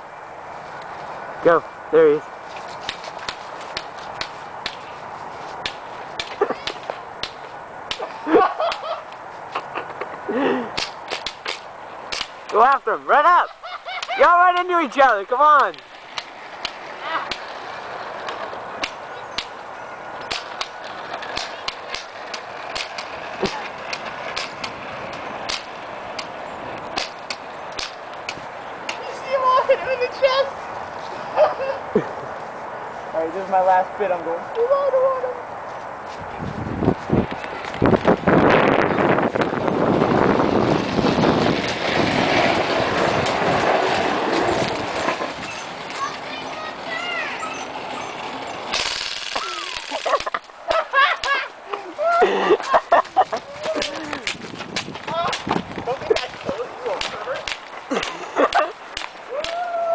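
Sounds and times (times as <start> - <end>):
sharp clicks and snaps: 10.8 - 12.6
wind buffeting microphone: 35.5 - 46.9, 51.6 - 59.9.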